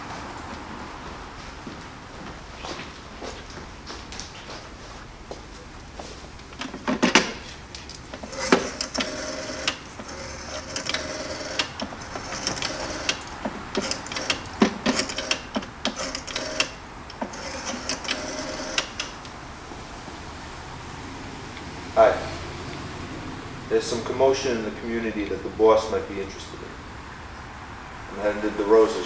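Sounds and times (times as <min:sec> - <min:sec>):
mechanical clicking and clattering: 0:06.4 - 0:19.5.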